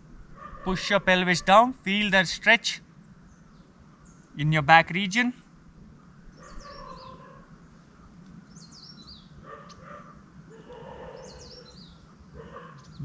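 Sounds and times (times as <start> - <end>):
faint ambient hum: 0.0 - 13.0
bird chirping: 6.3 - 7.4, 8.5 - 9.9, 10.5 - 13.0.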